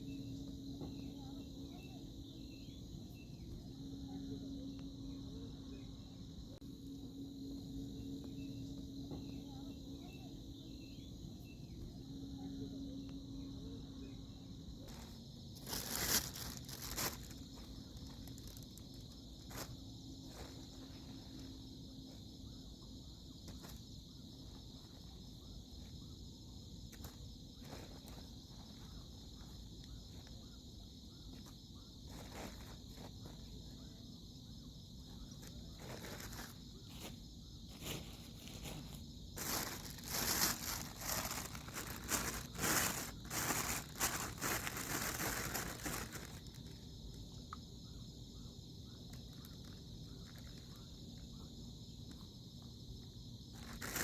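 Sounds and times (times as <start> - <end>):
high insect drone: 0.0 - 54.0
rustling and crackling: 14.8 - 21.5, 35.4 - 46.8, 53.6 - 54.0.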